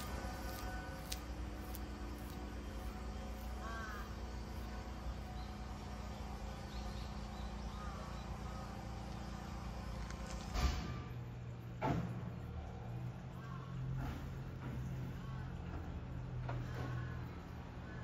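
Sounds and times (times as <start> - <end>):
steady low hum: 0.0 - 18.0
crow cawing: 3.5 - 4.4.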